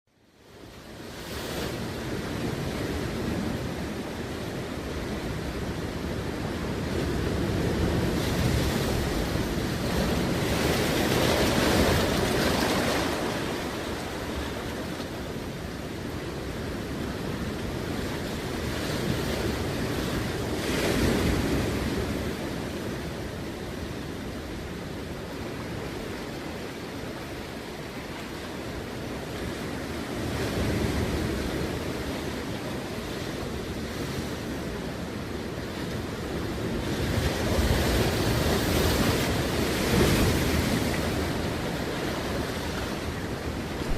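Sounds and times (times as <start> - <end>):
ocean waves breaking: 0.4 - 43.9
wind buffeting microphone: 34.5 - 43.9.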